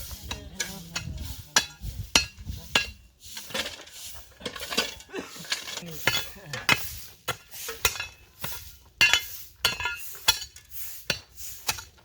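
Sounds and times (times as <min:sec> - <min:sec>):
metal tools striking stones: 0:09.0 - 0:12.0.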